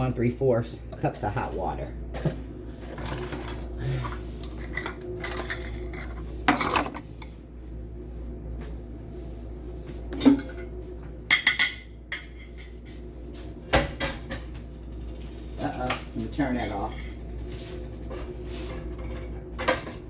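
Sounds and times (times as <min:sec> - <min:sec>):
pots and pans clattering: 0:02.2 - 0:07.1, 0:10.1 - 0:10.7, 0:11.3 - 0:12.9, 0:15.2 - 0:20.0.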